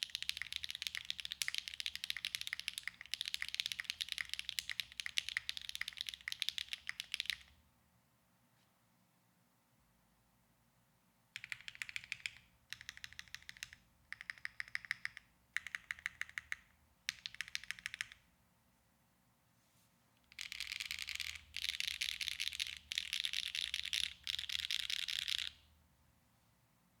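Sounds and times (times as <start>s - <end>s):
mechanical keyboard typing: 0.0s - 7.5s, 11.4s - 18.2s, 20.3s - 25.6s.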